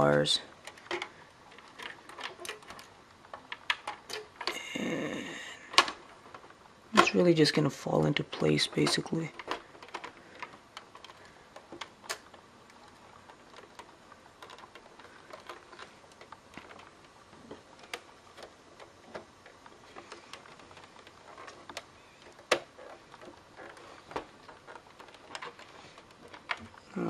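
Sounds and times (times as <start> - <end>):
plastic and metal clicks: 8.1 - 27.0.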